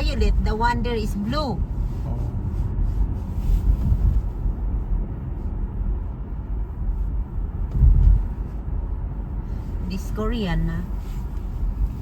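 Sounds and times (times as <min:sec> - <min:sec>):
car road and engine rumble: 0:00.0 - 0:12.0
car bump: 0:07.6 - 0:08.4.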